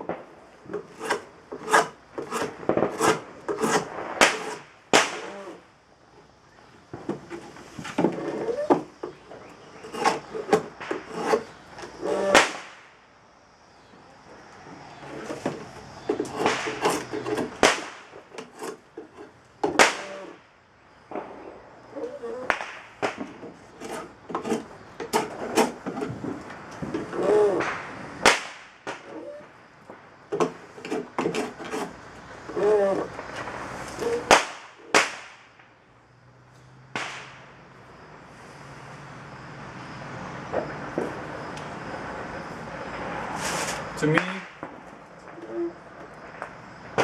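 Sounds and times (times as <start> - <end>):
sharp loud wood cracks: 0.0 - 5.7, 6.9 - 13.0, 15.0 - 35.8, 36.9 - 37.6, 44.0 - 47.0
drawknife shaving wood: 0.7 - 5.6, 7.2 - 12.4, 15.0 - 17.6, 18.3 - 20.3, 23.4 - 26.4, 30.3 - 33.1.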